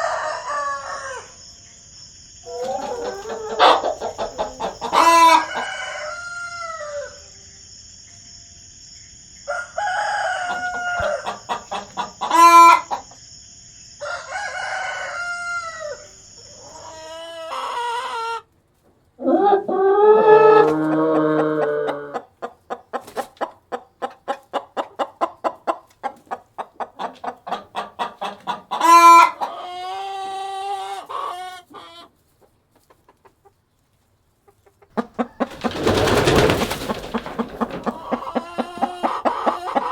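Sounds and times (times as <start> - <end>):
roosters crowing: 0.0 - 1.4, 2.5 - 7.3, 9.5 - 13.1, 14.0 - 18.4, 35.0 - 39.9
chickens clucking: 2.4 - 7.2, 10.0 - 13.3, 14.0 - 39.9.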